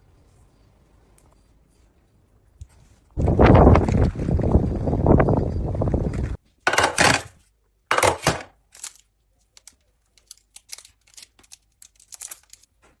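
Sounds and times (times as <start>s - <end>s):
handling rustle: 6.7s - 7.3s, 7.9s - 12.7s.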